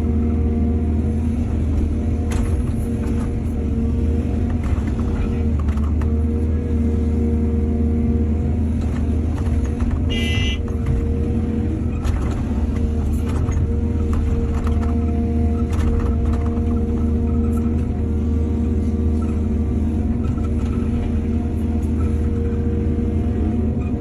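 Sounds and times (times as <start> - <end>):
excavator diesel engine running: 0.0 - 24.0
knocks and clatter: 4.4 - 6.2, 8.8 - 11.2, 11.8 - 18.0.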